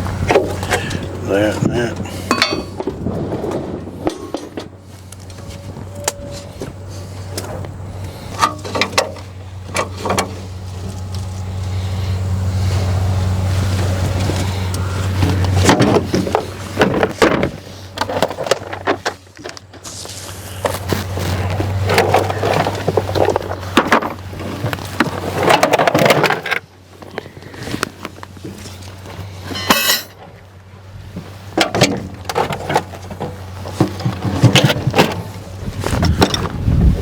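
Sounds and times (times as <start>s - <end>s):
engine humming: 0.0s - 37.0s
metal tools clinking: 2.2s - 2.9s, 29.4s - 30.2s.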